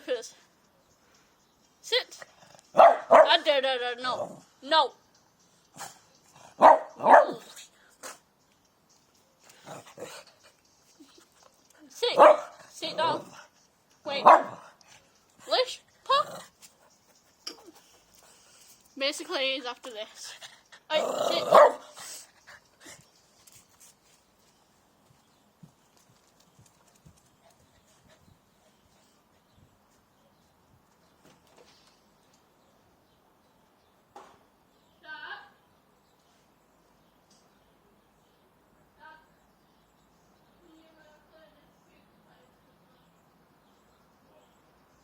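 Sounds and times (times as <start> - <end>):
dog barking: 2.8 - 3.4, 6.6 - 8.2, 12.2 - 12.6, 14.2 - 14.6, 21.4 - 21.9.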